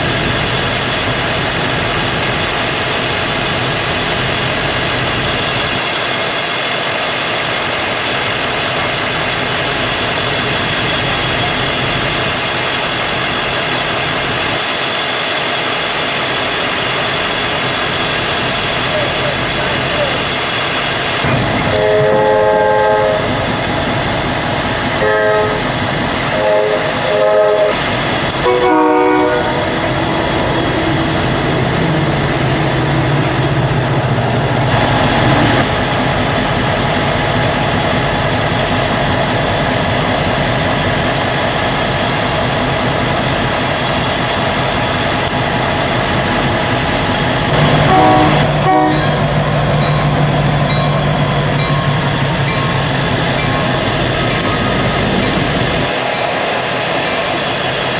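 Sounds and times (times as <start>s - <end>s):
diesel engines running: 0.0s - 57.9s
locomotive horn blasts: 21.7s - 23.3s, 25.0s - 25.7s, 26.3s - 27.8s, 28.4s - 29.8s, 47.5s - 49.3s.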